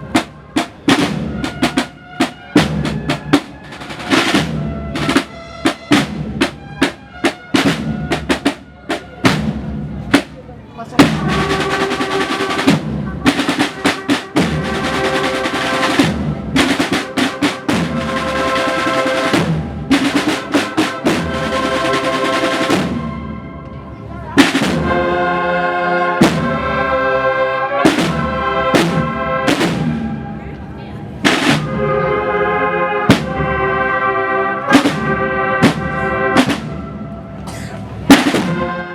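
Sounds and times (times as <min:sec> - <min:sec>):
snare drum rolls: 0:00.0 - 0:23.2, 0:24.4 - 0:25.1, 0:27.9 - 0:30.2, 0:31.2 - 0:31.8, 0:33.1 - 0:33.6, 0:34.7 - 0:37.0, 0:38.1 - 0:38.8.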